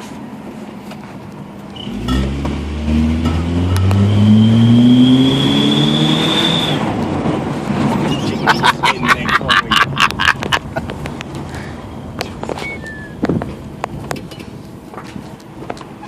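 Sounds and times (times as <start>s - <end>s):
car engine accelerating: 1.7s - 8.8s
high thin exhaust whistle: 3.7s - 6.8s.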